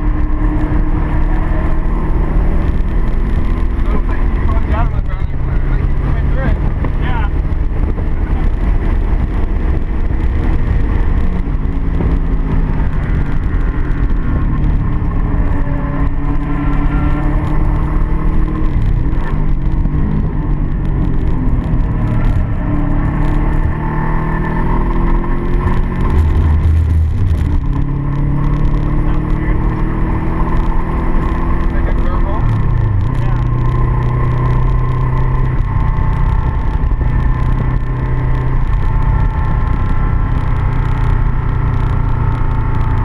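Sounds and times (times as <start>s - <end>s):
car engine running at low revs: 0.0s - 43.0s
road rumble: 0.0s - 43.0s
wind rumble: 0.0s - 43.0s.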